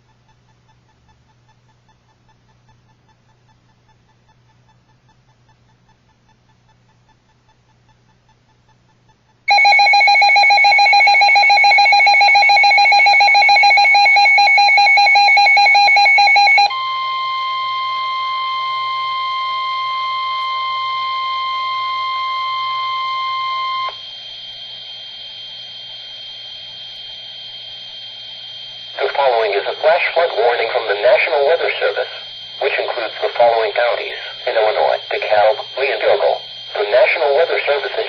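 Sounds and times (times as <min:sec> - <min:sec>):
steady attention tone: 0:09.5 - 0:22.5, 0:23.9 - 0:38.0.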